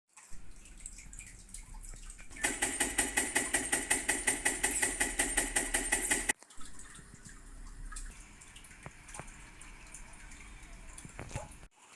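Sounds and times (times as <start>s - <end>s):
mechanical keyboard keys clacking: 2.4s - 6.4s.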